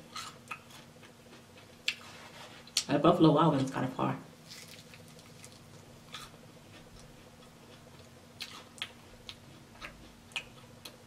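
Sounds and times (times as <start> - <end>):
crunching chicken wing: 4.4 - 11.0.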